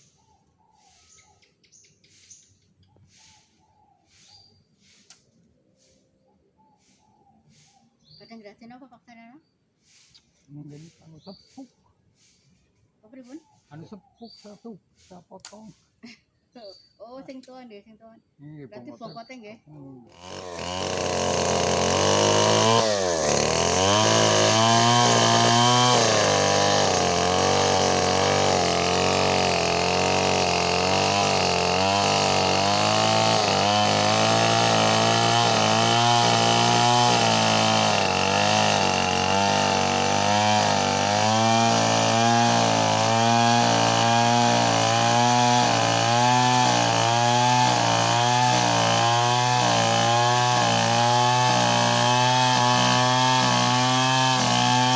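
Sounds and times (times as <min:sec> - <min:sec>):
chainsaw cutting wood: 0:20.1 - 0:54.9.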